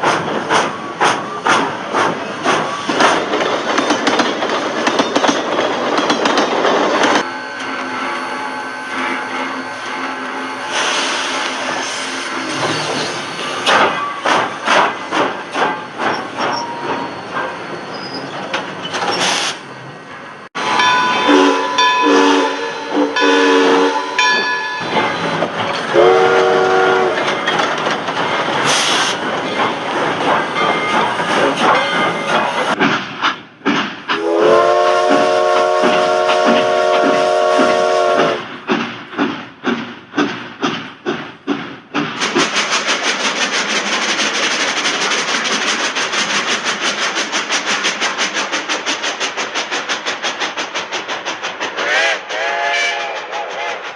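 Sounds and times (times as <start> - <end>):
steam locomotive exhaust chuffs: 0.0 - 19.8, 20.5 - 53.9
steam whistle blasts: 20.6 - 24.8, 25.9 - 27.2, 34.1 - 38.4, 51.8 - 53.8.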